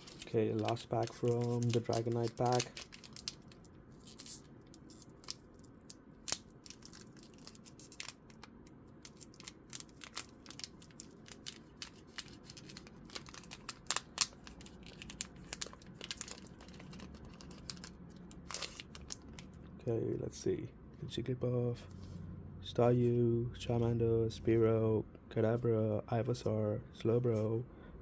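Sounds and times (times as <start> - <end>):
foil wrapper tearing and crinkling: 0.0 - 19.5.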